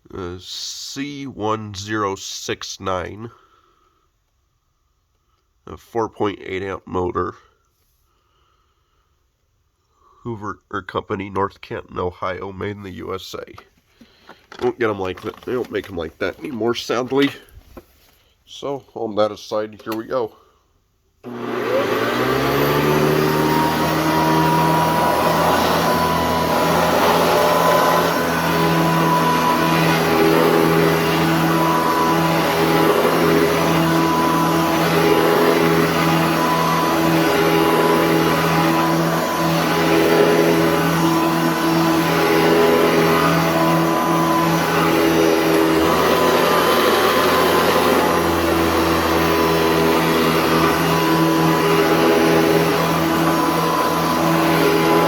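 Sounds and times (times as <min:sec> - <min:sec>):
vacuum cleaner humming: 0:21.2 - 0:55.0.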